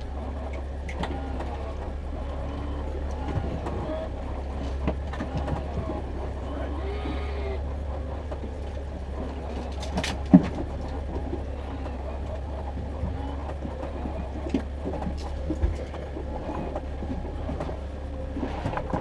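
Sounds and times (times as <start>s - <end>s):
boat engine droning: 0.0s - 19.0s
knocks in a boat: 4.6s - 6.1s.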